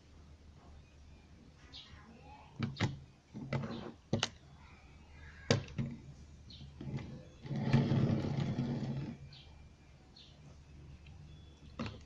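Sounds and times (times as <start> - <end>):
turntable base rumbling: 5.5 - 9.2.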